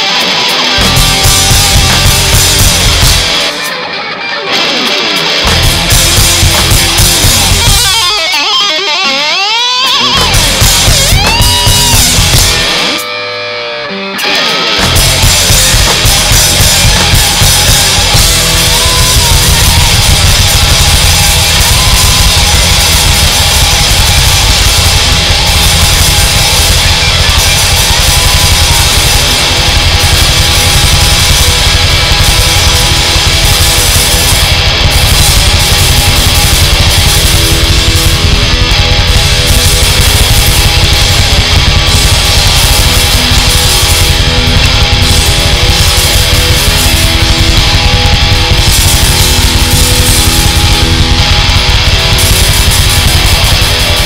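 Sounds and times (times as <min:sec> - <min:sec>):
heavy rock band playing: 0:00.0 - 0:54.0.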